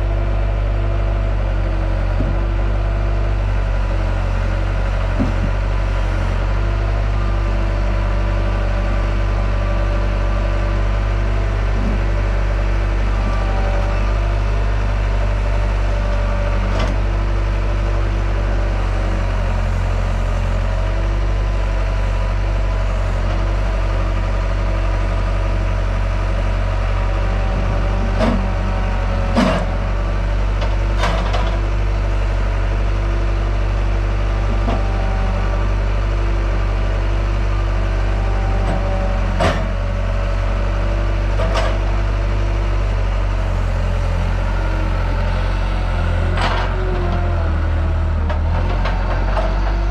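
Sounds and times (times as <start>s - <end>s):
diesel engine running: 0.0s - 49.9s
short clunks and knocks: 2.1s - 2.6s, 5.1s - 5.6s.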